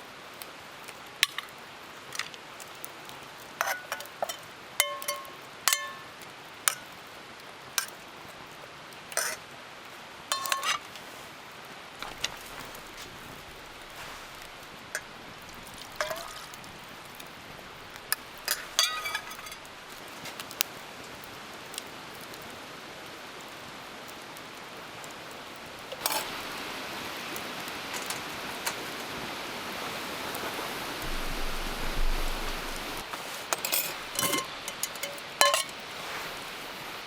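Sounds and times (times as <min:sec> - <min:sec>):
metallic clink: 0:03.7 - 0:06.1, 0:10.3 - 0:10.8, 0:16.0 - 0:16.7, 0:18.5 - 0:19.7, 0:25.9 - 0:26.3, 0:33.5 - 0:35.8
wind rushing: 0:31.0 - 0:33.0.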